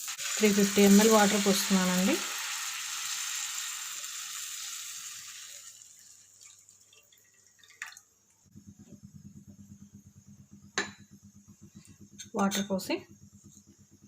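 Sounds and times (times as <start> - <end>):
water hissing in hot pan: 0.0 - 8.0
low fast pulsing: 8.4 - 14.0.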